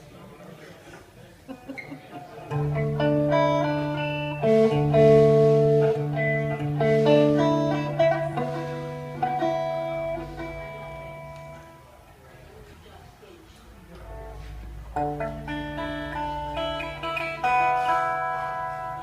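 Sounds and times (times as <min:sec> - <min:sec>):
guitar picking melody: 0:02.4 - 0:12.0, 0:14.0 - 0:19.0.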